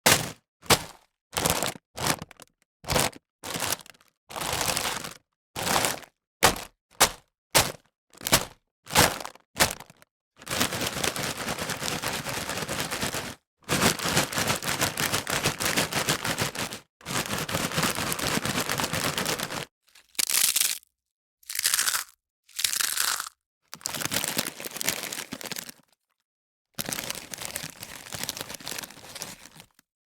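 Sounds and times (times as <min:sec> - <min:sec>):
potato chips crunching: 0:08.2 - 0:11.9, 0:17.9 - 0:20.9, 0:21.5 - 0:25.8, 0:26.8 - 0:29.8.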